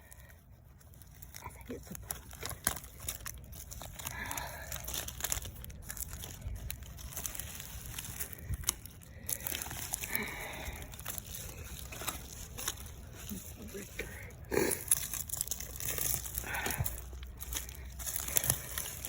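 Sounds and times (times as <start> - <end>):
hand digging in dirt and debris: 0.0 - 19.0.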